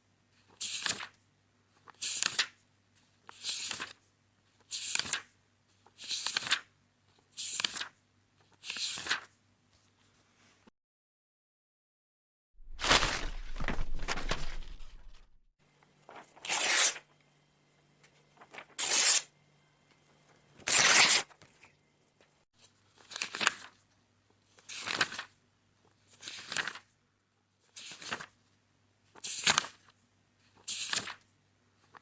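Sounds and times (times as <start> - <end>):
book pages being torn: 12.7 - 14.9, 16.1 - 17.0, 18.4 - 19.3, 20.6 - 21.4.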